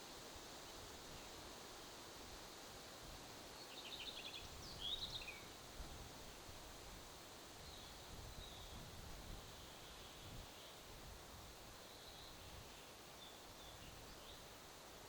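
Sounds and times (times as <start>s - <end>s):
wind on microphone: 7.6s - 9.6s.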